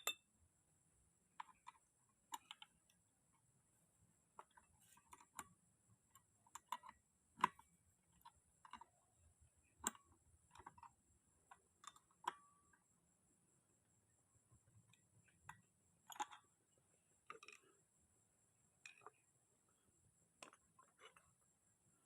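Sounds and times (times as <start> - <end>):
tools clicking and tapping: 0.0 - 0.2, 6.1 - 9.0.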